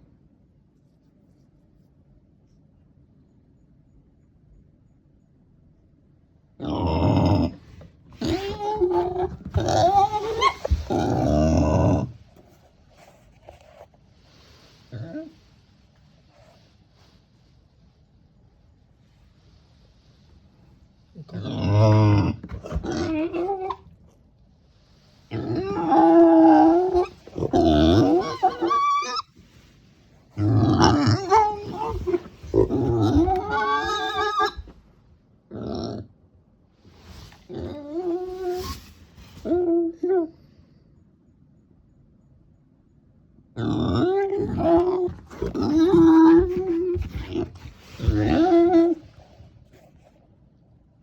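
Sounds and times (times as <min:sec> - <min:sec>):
pig whining calls: 0:06.6 - 0:13.6, 0:21.2 - 0:24.1, 0:25.2 - 0:29.7, 0:30.3 - 0:34.8, 0:37.1 - 0:40.2, 0:43.6 - 0:50.0.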